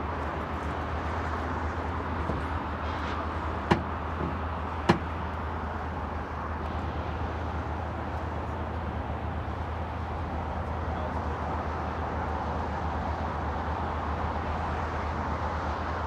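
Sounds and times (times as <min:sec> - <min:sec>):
sharp knocks: 0:03.6 - 0:05.1.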